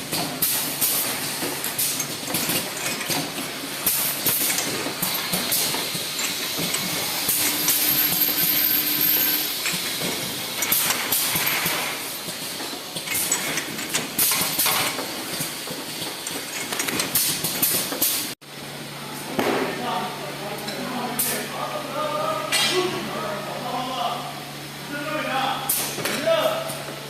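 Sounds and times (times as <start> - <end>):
machine parts clicking and clattering: 0.4 - 18.2.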